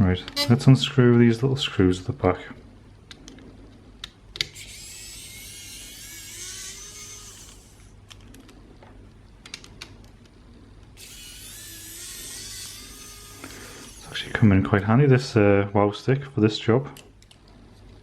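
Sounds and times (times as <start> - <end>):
electric screwdriver whining: 4.5 - 7.9, 11.0 - 14.3.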